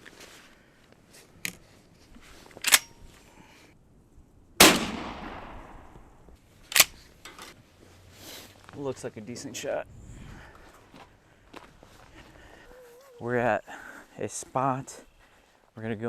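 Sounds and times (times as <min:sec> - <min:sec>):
shotgun shot with echo: 0:04.6 - 0:05.9.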